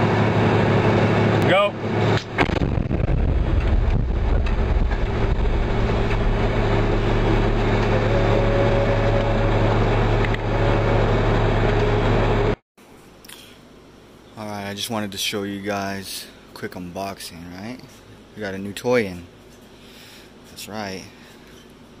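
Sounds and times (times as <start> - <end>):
vehicle engine humming: 0.0 - 12.6.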